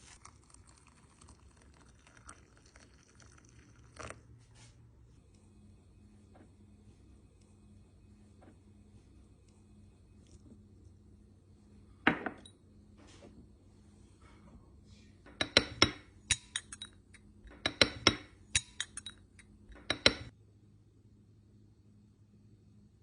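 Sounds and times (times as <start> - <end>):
kitchenware clinking against glass: 15.3 - 20.3.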